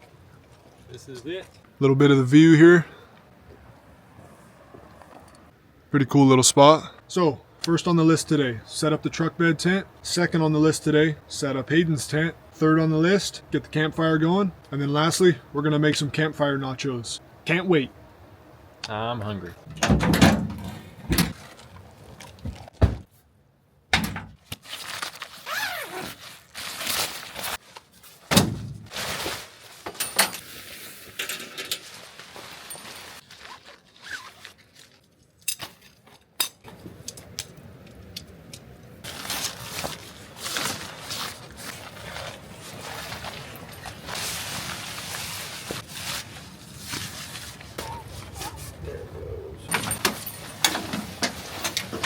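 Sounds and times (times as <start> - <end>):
camping gear thunks and clinks: 19.7 - 23.1, 29.8 - 30.5, 49.7 - 52.0.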